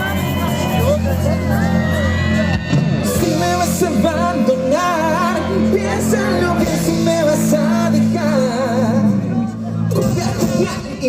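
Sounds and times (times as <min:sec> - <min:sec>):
live band with singing: 0:00.0 - 0:11.0.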